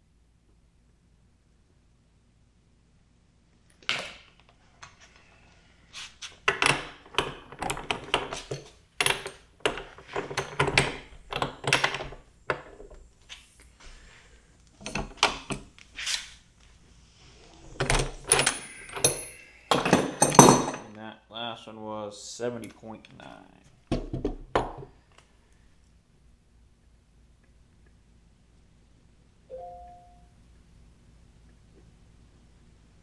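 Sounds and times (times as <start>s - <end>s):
metal tools clinking: 17.6s - 20.9s.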